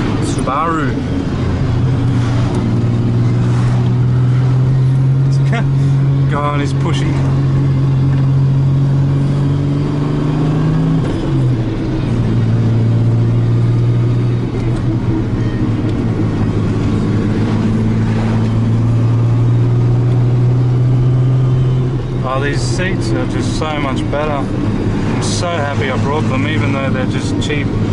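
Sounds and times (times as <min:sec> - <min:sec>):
car engine drone from inside: 0:00.0 - 0:27.9.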